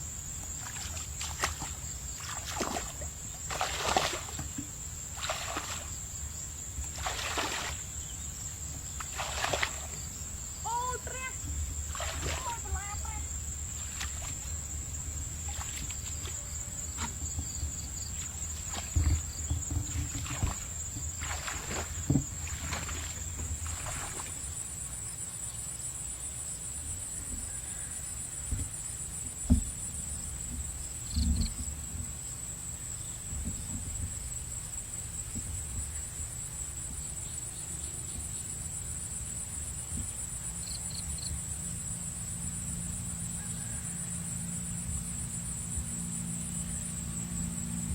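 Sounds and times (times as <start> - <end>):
insects chirring: 0.0 - 47.9
short thumps and knocks: 16.9 - 23.6, 28.5 - 29.8.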